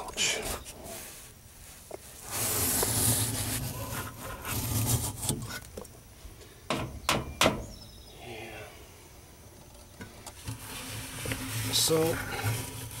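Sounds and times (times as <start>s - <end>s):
fin comb scraping metal fins: 10.4s - 13.0s.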